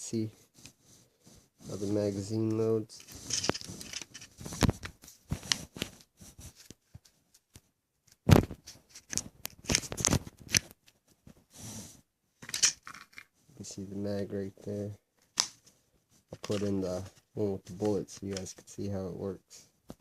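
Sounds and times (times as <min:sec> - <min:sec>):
metal gun parts clicking: 0:03.3 - 0:04.3, 0:12.4 - 0:13.3.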